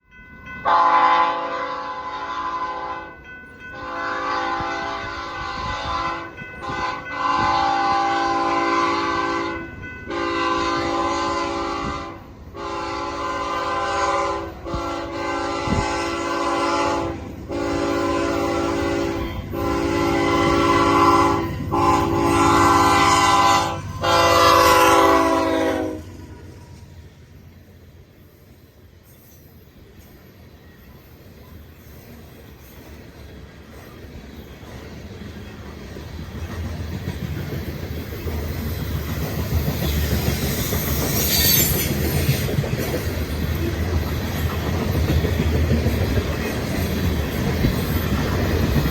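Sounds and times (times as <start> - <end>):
train rumble: 0.4 - 48.9
locomotive horn blasts: 0.6 - 3.2, 3.8 - 26.6.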